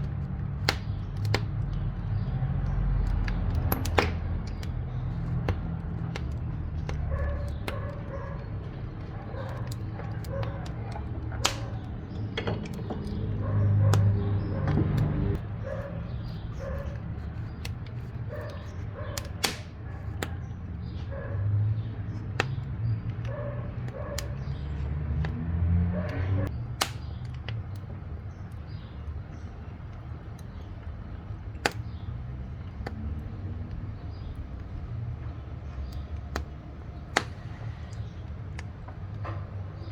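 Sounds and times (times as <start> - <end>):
wood fire crackling and popping: 0.0 - 20.8, 26.4 - 39.5
stove fire low rumble: 0.0 - 21.0.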